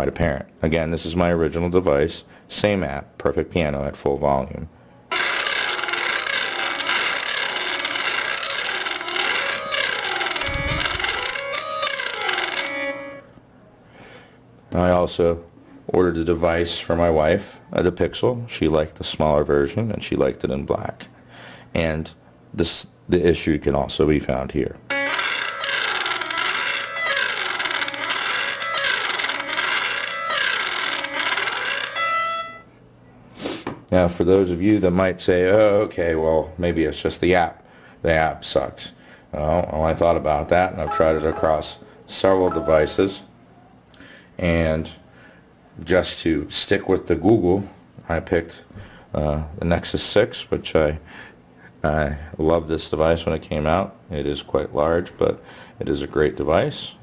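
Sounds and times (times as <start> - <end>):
piano chords from phone speaker: 5.1 - 13.4, 40.8 - 43.3
speaker popping and crackling: 10.3 - 12.7
piano through phone speaker: 40.8 - 43.3.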